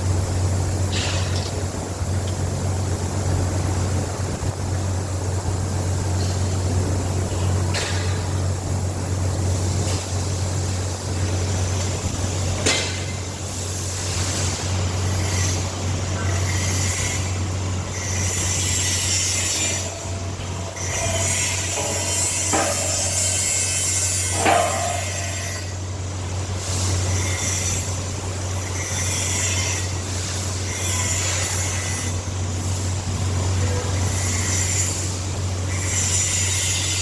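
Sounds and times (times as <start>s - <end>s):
machine humming: 0.0s - 37.0s
high hissing or scraping: 13.4s - 25.8s.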